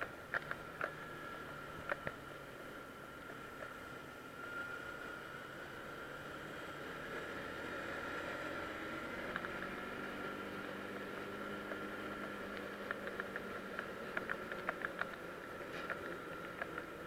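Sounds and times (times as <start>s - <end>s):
motorcycle engine running: 5.7s - 17.0s
sharp ticks: 9.2s - 17.0s.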